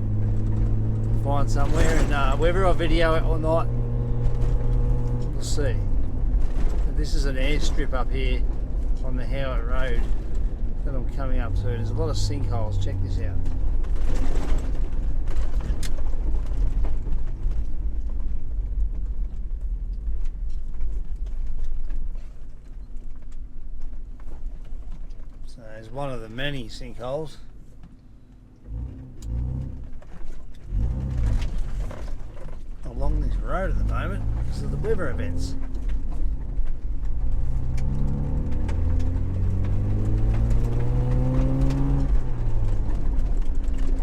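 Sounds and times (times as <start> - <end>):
engine pulling under load: 0.0 - 8.4, 28.6 - 44.0
vehicle knocks and rattles: 0.0 - 25.5, 28.7 - 44.0
vehicle rumbling on dirt road: 0.0 - 44.0.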